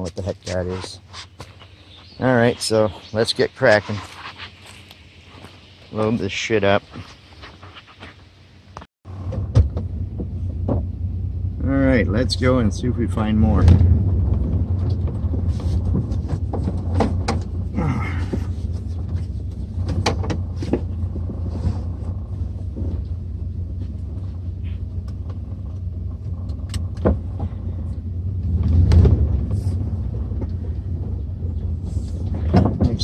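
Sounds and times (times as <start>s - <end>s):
truck engine and road rumble: 0.0s - 33.0s
knocks and rattles: 9.1s - 11.1s, 13.5s - 33.0s.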